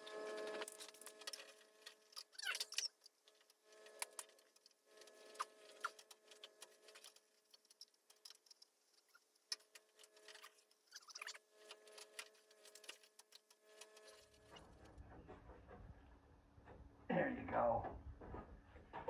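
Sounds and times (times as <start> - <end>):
brief squeak: 2.2 - 3.0, 10.9 - 11.4.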